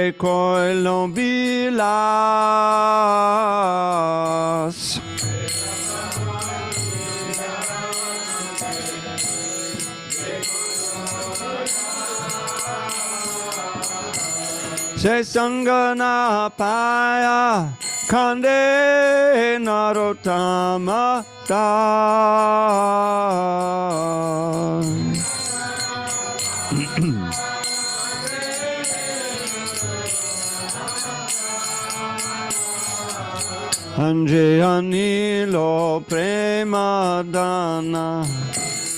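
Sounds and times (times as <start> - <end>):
devotional singing: 0.0 - 38.9
hand cymbals ringing: 0.2 - 38.9
metallic jingling strokes: 3.0 - 34.0
held instrumental tones: 3.6 - 38.9.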